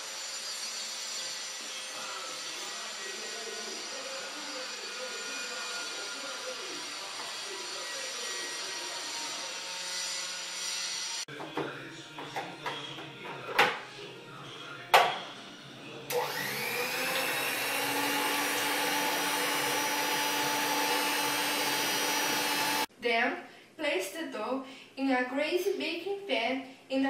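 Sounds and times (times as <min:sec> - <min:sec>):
electric mixer motor whine: 0:16.1 - 0:22.9.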